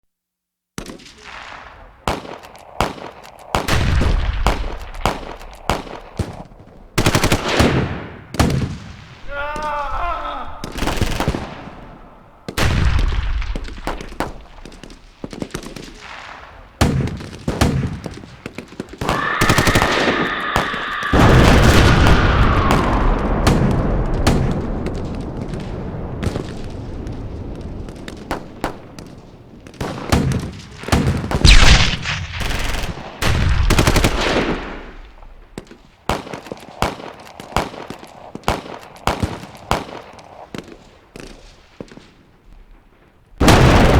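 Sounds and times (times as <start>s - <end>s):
gunfire: 0.8s - 42.2s, 43.4s - 43.9s
high pitched tone: 19.1s - 22.2s.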